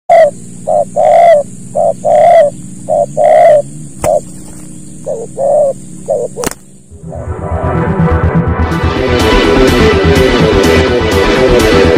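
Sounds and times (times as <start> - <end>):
dove cooing: 0.1 - 7.2.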